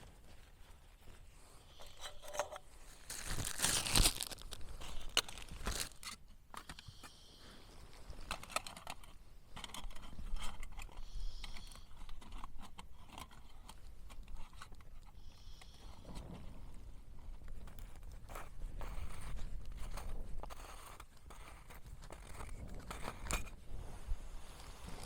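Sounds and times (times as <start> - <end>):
camping gear clicks and knocks: 1.7 - 6.9, 7.9 - 15.2.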